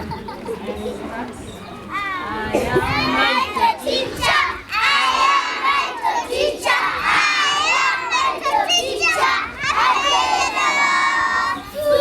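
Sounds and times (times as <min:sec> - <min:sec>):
children shouting: 0:01.9 - 0:12.0.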